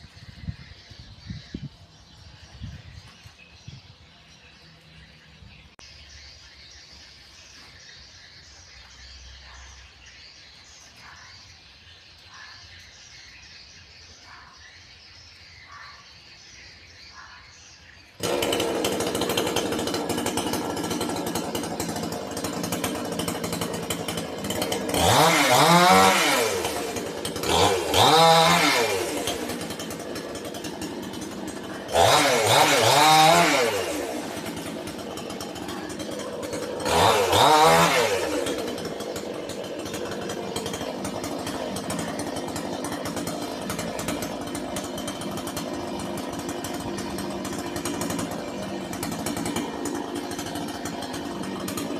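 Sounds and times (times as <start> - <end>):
chainsaw revving: 18.2 - 51.9.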